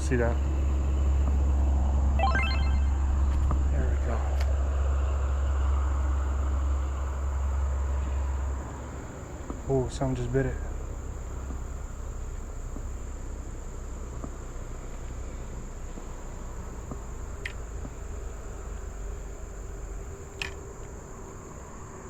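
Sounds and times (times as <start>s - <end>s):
short high chirps: 2.2s - 3.1s.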